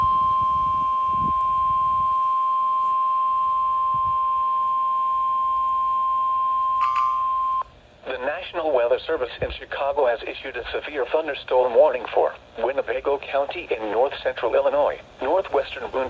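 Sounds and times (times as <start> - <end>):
long high alarm beep: 0.0 - 7.7
radio crackle: 7.4 - 16.0.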